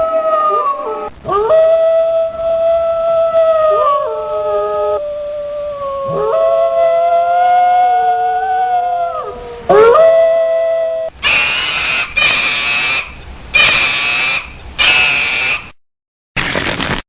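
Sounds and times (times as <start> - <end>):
dog howling: 0.0 - 11.1
shrill animal sound: 0.0 - 15.7.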